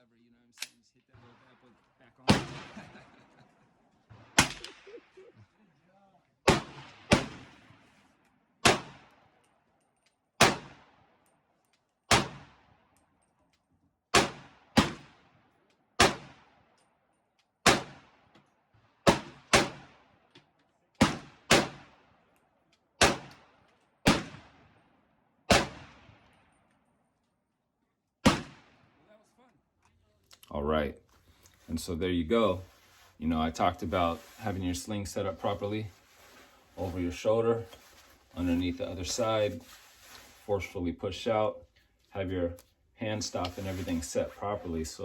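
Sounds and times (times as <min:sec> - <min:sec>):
gunshots with echo: 0:01.2 - 0:03.4, 0:04.1 - 0:05.3, 0:06.4 - 0:08.0, 0:08.6 - 0:09.2, 0:10.4 - 0:11.2, 0:12.1 - 0:12.7, 0:14.1 - 0:15.4, 0:16.0 - 0:16.6, 0:17.6 - 0:18.3, 0:19.0 - 0:20.2, 0:21.0 - 0:22.1, 0:23.0 - 0:24.8, 0:25.5 - 0:26.4, 0:28.2 - 0:29.0.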